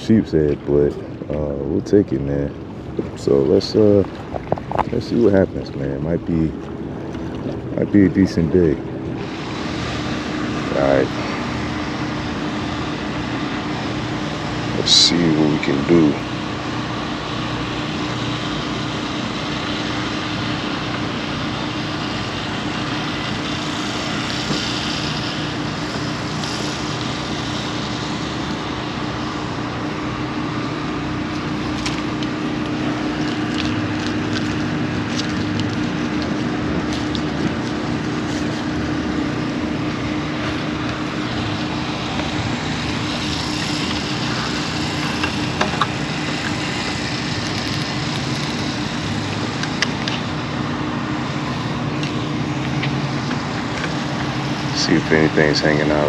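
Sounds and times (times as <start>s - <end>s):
motor humming: 0.0s - 56.0s.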